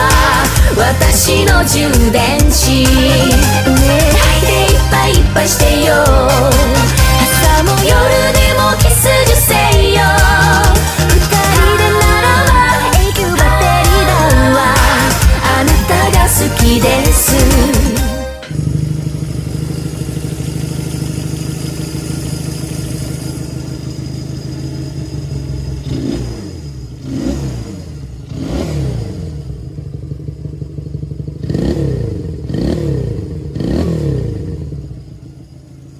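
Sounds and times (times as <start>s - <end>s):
motorcycle engine idling and revving: 0.0s - 35.9s.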